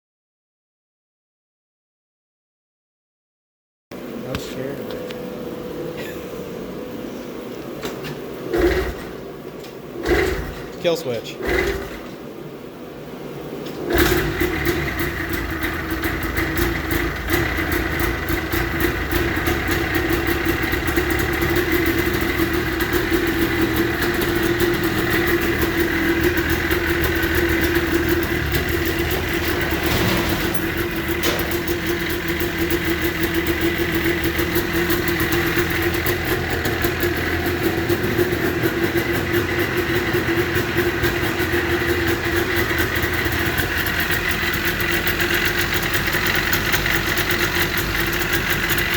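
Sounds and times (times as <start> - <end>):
snowmobile engine idling: 14.0 - 48.9.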